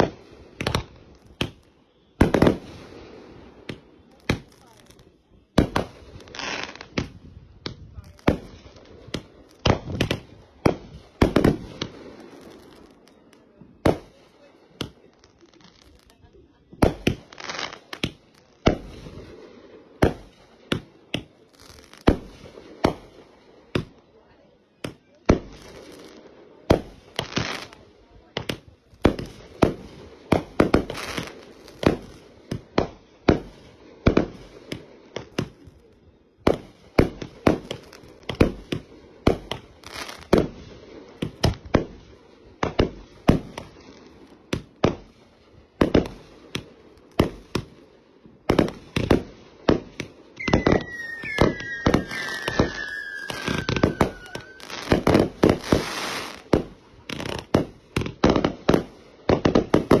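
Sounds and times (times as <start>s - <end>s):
fireworks banging and crackling: 0.0s - 60.0s
firework whistles falling in pitch: 50.4s - 56.4s.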